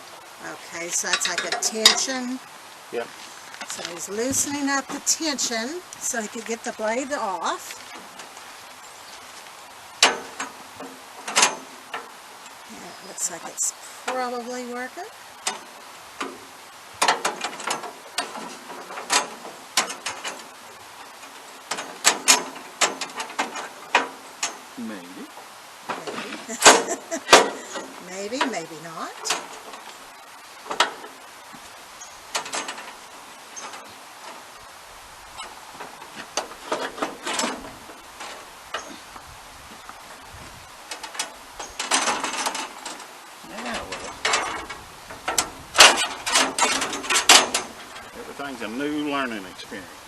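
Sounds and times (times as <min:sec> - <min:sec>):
metal clicks and knocks: 0:10.0 - 0:12.1, 0:15.4 - 0:24.7, 0:30.6 - 0:31.2, 0:32.3 - 0:33.0, 0:40.9 - 0:43.1, 0:43.8 - 0:48.1.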